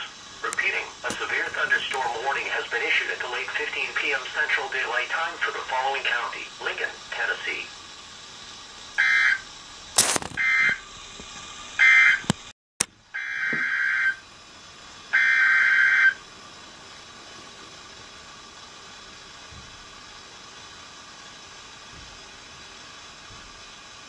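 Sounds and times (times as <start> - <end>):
buzzy digital data bursts: 0.0 - 12.2
steady hiss: 0.0 - 24.0
sharp click: 10.0 - 10.4.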